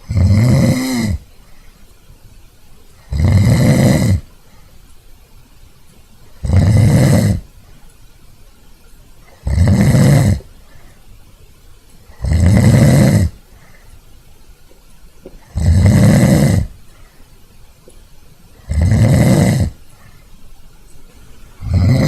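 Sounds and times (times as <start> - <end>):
man snoring loudly: 0.0 - 1.3, 3.0 - 4.3, 6.4 - 7.5, 9.3 - 10.5, 12.1 - 13.4, 15.4 - 16.8, 18.6 - 19.8, 21.6 - 22.0.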